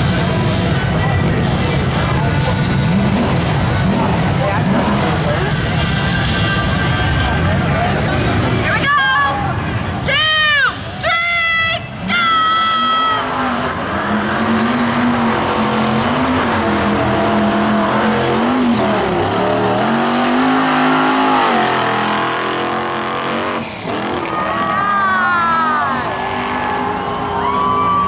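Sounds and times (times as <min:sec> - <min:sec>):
off-road vehicle engine revving: 0:00.0 - 0:08.8, 0:11.9 - 0:28.0.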